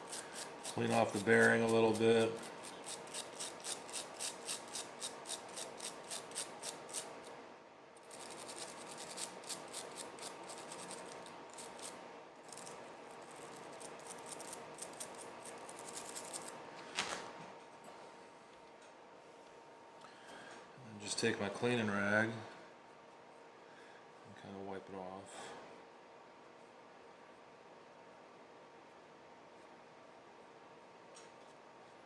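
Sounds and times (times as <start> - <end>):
brush scrubbing wet metal: 0.0 - 7.2, 8.0 - 11.9.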